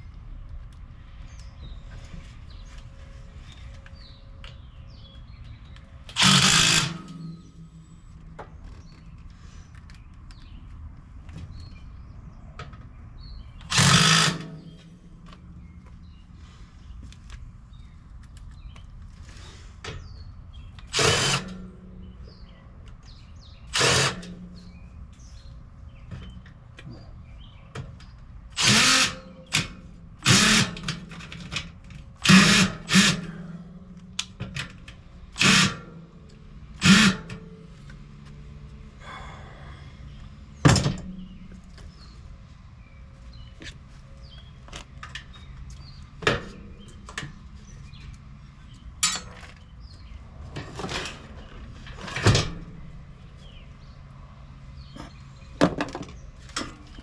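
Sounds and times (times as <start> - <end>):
power drill bursts: 6.1 - 7.6, 13.7 - 14.8, 20.9 - 21.6, 23.7 - 24.4, 28.6 - 31.2, 32.2 - 33.6, 35.3 - 35.9, 36.8 - 37.5.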